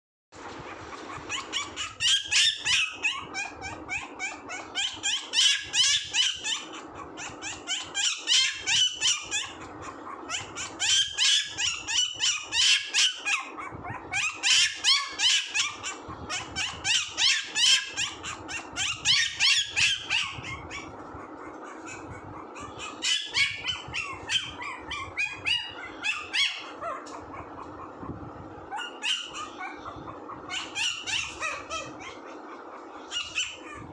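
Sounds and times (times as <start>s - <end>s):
puppy yapping: 0.4s - 33.9s.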